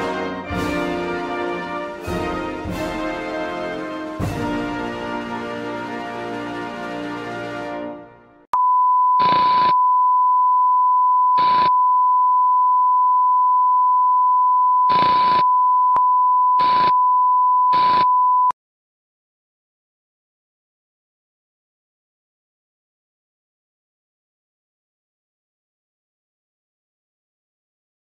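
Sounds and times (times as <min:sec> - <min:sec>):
orchestral chord: 0:00.0 - 0:08.4.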